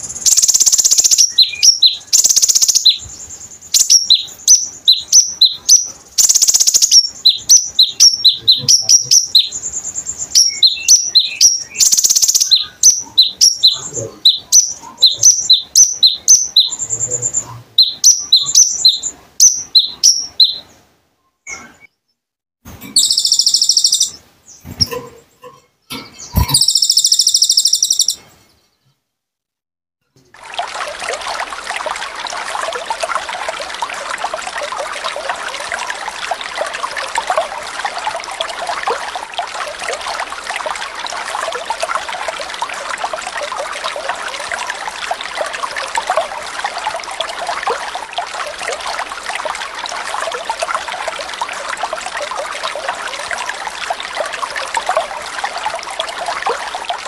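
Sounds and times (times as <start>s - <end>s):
running water trickling: 0.0s - 20.9s, 22.7s - 28.2s, 30.1s - 57.0s
songbird chirping: 0.0s - 22.2s, 22.8s - 29.0s
buzzy bird trills: 22.9s - 28.2s.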